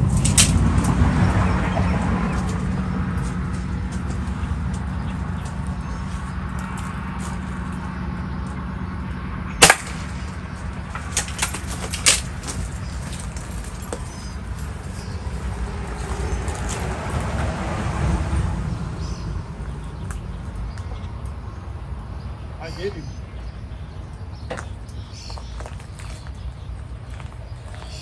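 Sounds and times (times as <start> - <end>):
steady low rumble: 0.0 - 28.0
pellet gun shot: 9.6 - 10.4.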